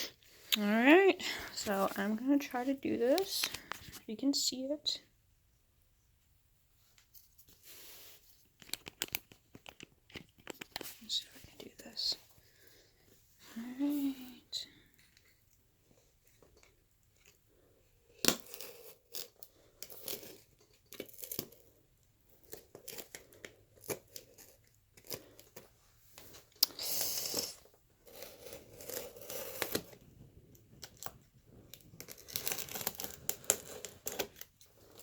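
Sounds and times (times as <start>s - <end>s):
tape and packing material tearing: 26.6s - 29.9s, 32.0s - 35.0s.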